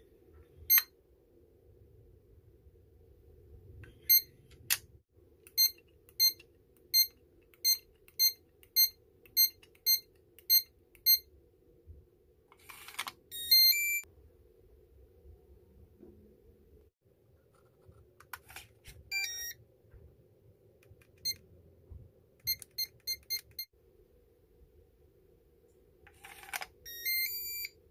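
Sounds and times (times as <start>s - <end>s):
keypad beeping: 5.5s - 11.2s, 13.3s - 14.0s, 19.1s - 19.6s, 22.4s - 23.7s, 26.9s - 27.8s.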